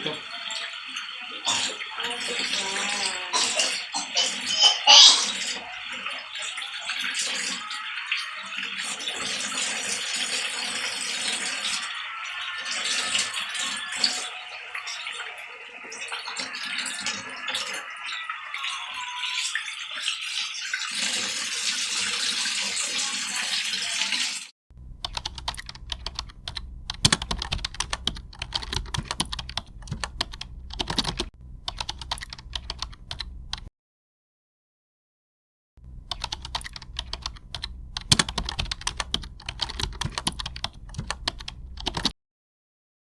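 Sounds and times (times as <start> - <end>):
rapid irregular clicking: 24.7 - 33.7, 35.8 - 42.1.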